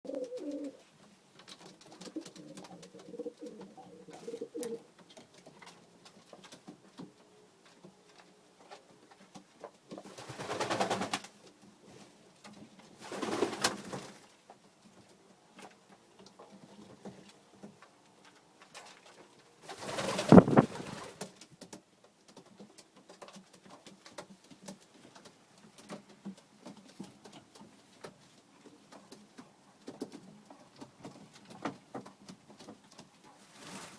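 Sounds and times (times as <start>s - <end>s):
pigeons cooing: 0.1s - 0.9s, 2.0s - 4.9s.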